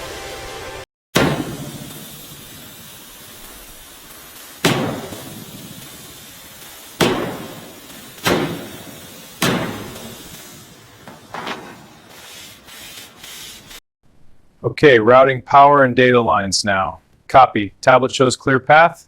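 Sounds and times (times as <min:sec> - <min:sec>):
sharp ringing bangs: 0:01.2 - 0:02.8, 0:04.6 - 0:06.1, 0:07.0 - 0:10.7.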